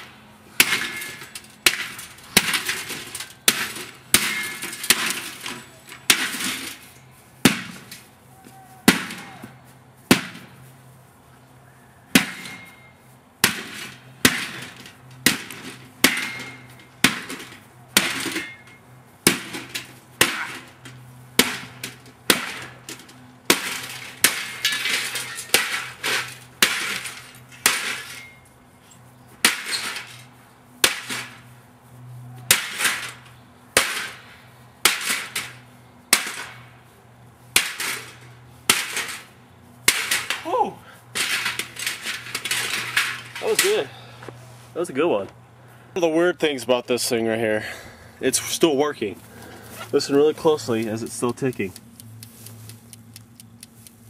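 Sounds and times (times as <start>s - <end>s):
metal and glass rattle: 0.6s - 7.0s, 13.6s - 18.8s, 21.5s - 28.5s, 41.1s - 43.9s
toaster oven being smashed: 21.4s - 28.2s, 41.2s - 43.8s.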